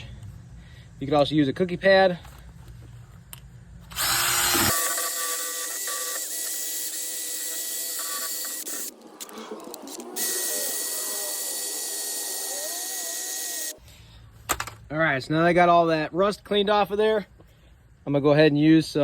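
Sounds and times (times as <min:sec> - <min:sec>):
wire brush power tool scouring metal: 0:03.9 - 0:13.8.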